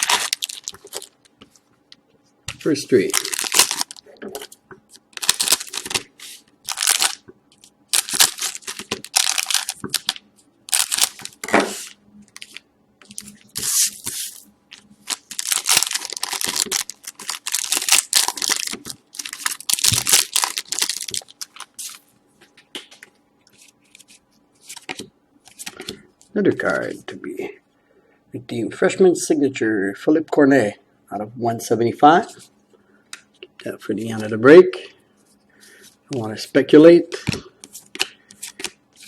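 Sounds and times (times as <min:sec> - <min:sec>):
card pack wrappers tearing: 0:00.0 - 0:01.2, 0:02.6 - 0:04.0, 0:05.2 - 0:06.1, 0:06.7 - 0:07.2, 0:07.9 - 0:14.4, 0:15.0 - 0:22.0.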